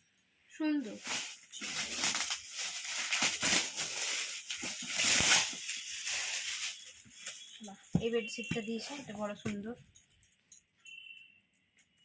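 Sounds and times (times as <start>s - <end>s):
gift wrapping crinkling: 0.8s - 9.6s.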